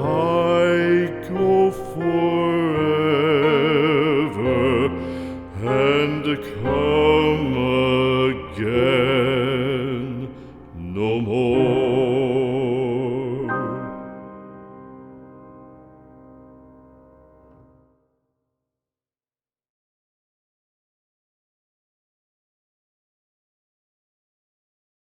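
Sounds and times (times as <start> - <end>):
slow tender music: 0.0 - 17.9.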